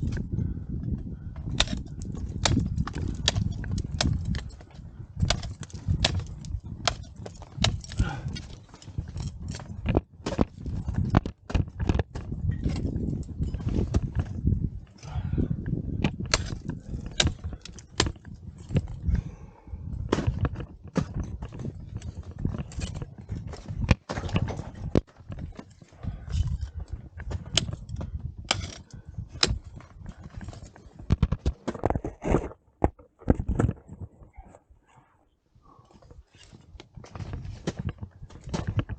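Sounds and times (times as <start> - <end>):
ice axes striking ice: 1.5 - 13.5, 16.1 - 18.8, 27.3 - 29.7.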